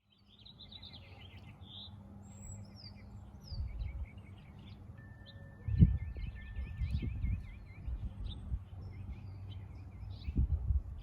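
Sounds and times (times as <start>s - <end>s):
wind rumble on microphone: 3.4s - 4.3s, 5.6s - 11.0s.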